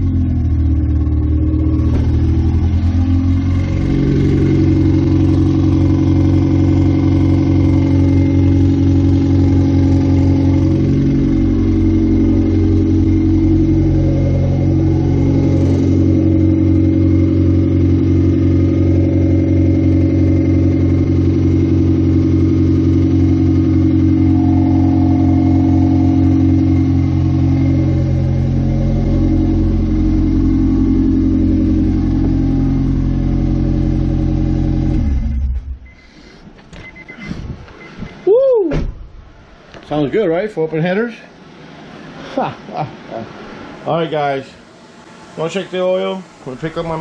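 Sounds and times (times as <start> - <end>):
car engine idling loudly: 0.0 - 35.9.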